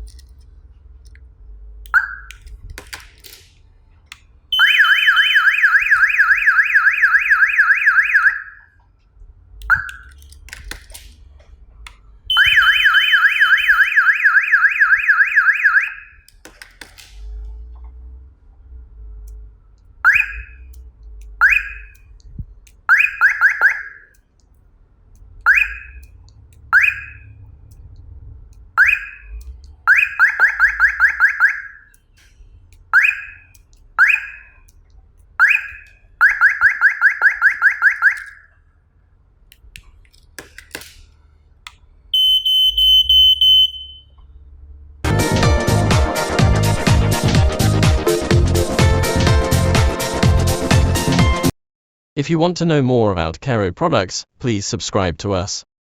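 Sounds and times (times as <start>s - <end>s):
smoke detector chirps: 1.9s - 2.4s, 4.5s - 8.6s, 9.6s - 10.1s, 12.3s - 16.3s, 20.0s - 20.8s, 21.4s - 22.1s, 22.9s - 24.2s, 25.4s - 26.2s, 26.8s - 27.3s, 28.8s - 32.0s, 42.2s - 44.2s
shrill pulsing alarm tone: 4.5s - 8.7s, 12.3s - 16.3s, 20.0s - 20.7s, 28.8s - 31.9s, 33.0s - 34.7s, 42.2s - 44.1s.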